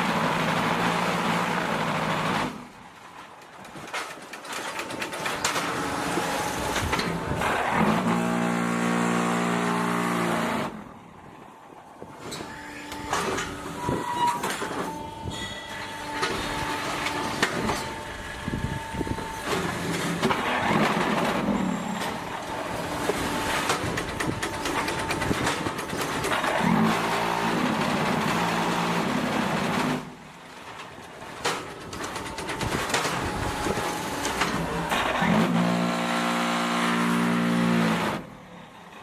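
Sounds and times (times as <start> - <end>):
machine knocks and clanks: 18.8 - 36.0.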